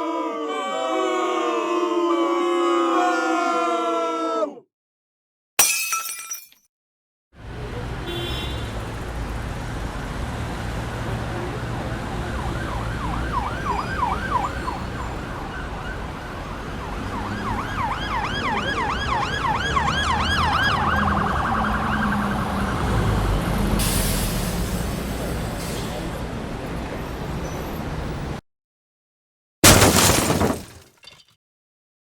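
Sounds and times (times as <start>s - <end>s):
low traffic rumble: 7.4s - 28.4s
siren yelping: 12.0s - 16.0s, 16.8s - 22.8s.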